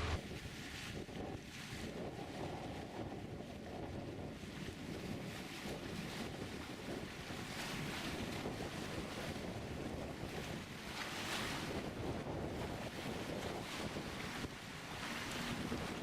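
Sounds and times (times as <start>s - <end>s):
wind buffeting microphone: 0.0s - 16.0s
rushing water: 12.6s - 16.0s.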